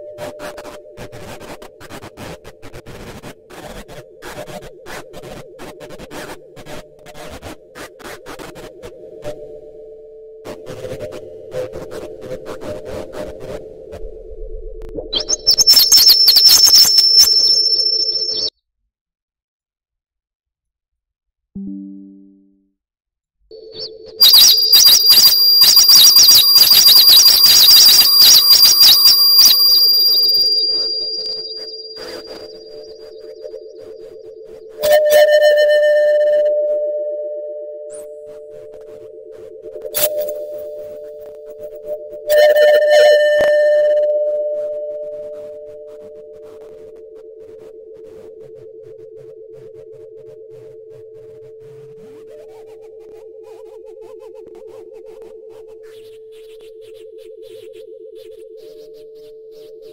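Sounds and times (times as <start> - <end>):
low steady synth tone: 9.0 - 11.6, 21.6 - 22.8, 29.2 - 59.9
chopped synthesizer noise bursts: 15.0 - 18.5, 23.7 - 34.9
steady mid-pitched synth tone: 21.6 - 22.6
noisy crackling clicks: 24.3 - 29.6.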